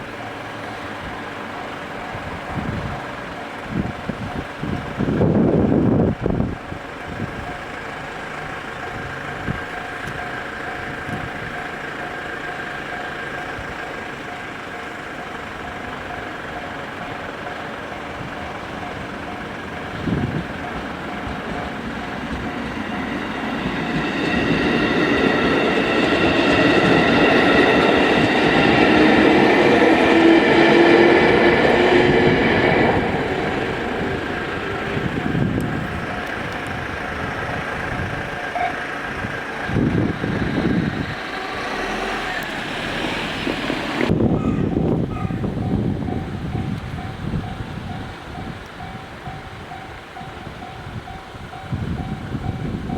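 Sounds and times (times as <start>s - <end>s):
level crossing alarm ringing: 0.0s - 5.2s, 5.8s - 52.9s
train passing: 0.0s - 52.9s
wheel and rail noise: 0.0s - 52.9s
rising motor tone: 21.1s - 44.1s.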